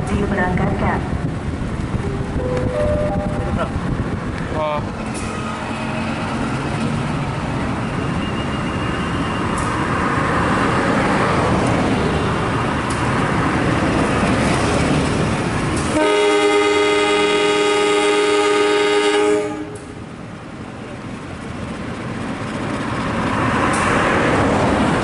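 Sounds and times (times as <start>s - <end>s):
train rumbling: 0.0s - 25.0s
train horn blast: 15.9s - 19.9s.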